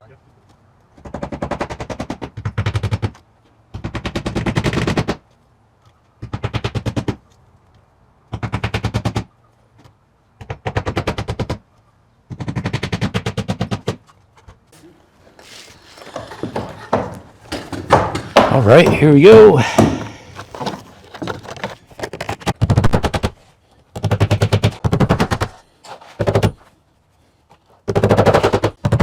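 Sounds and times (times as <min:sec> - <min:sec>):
power tool hammering: 0:19.7 - 0:20.4.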